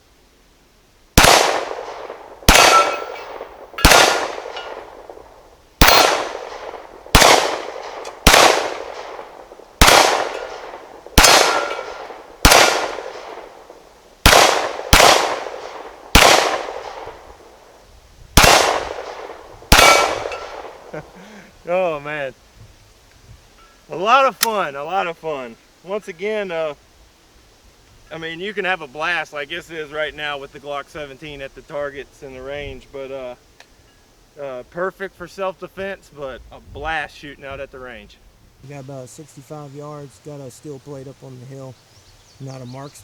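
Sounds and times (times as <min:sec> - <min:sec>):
pistol shots echoing: 0:01.2 - 0:17.5, 0:18.4 - 0:21.0.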